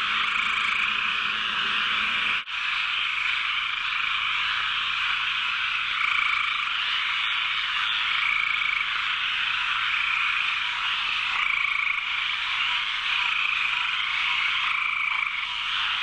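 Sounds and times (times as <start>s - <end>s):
chorus of frogs croaking: 0.0s - 16.0s.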